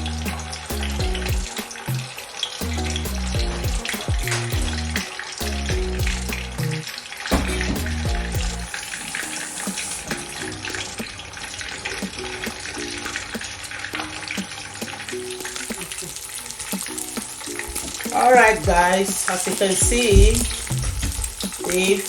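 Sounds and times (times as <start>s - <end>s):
background music: 0.0s - 22.0s
fish sizzling in oil: 0.0s - 22.0s.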